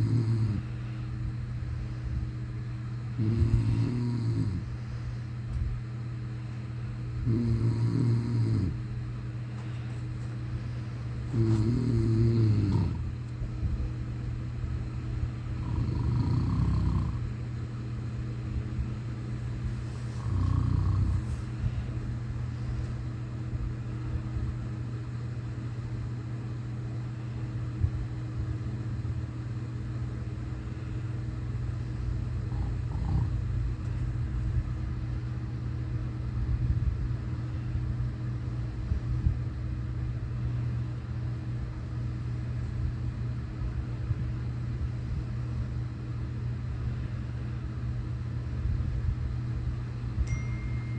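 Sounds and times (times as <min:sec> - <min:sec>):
person snoring heavily: 0:00.0 - 0:00.9, 0:03.2 - 0:05.1, 0:07.2 - 0:08.8, 0:11.3 - 0:13.1, 0:15.6 - 0:17.3, 0:20.0 - 0:21.5, 0:32.4 - 0:33.6
steady low hum: 0:00.0 - 0:50.9.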